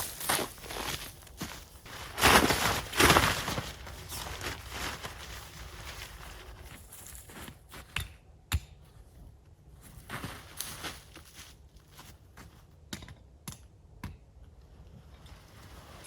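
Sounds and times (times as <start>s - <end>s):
footsteps on dry ground: 0.0s - 7.9s, 9.8s - 12.7s.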